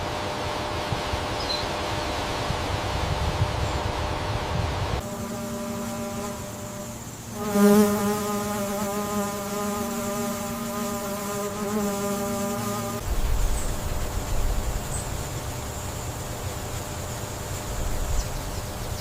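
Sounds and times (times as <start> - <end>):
flying insect buzzing: 5.0 - 18.3.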